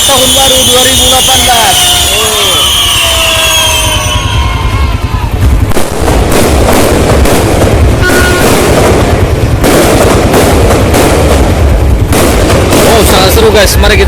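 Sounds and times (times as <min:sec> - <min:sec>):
fireworks booming and crackling: 0:00.0 - 0:14.0.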